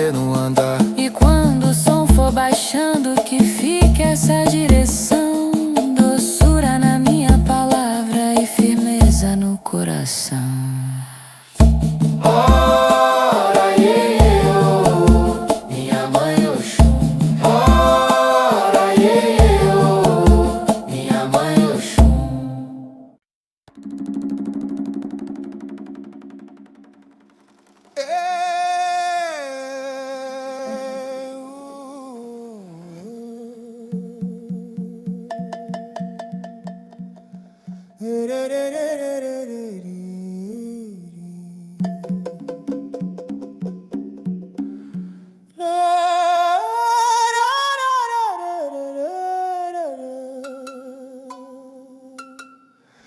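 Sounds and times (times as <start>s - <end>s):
rhythmic low-note accompaniment: 11.8s - 22.4s
person humming: 12.2s - 22.8s.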